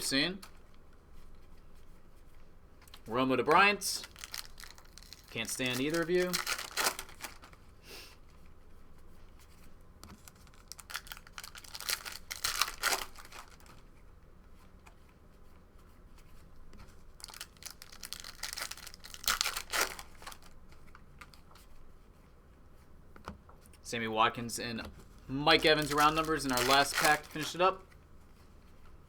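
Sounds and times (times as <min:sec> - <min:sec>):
wrapper tearing and crinkling: 0:04.0 - 0:07.6, 0:10.1 - 0:13.8, 0:17.2 - 0:20.6, 0:25.6 - 0:27.6.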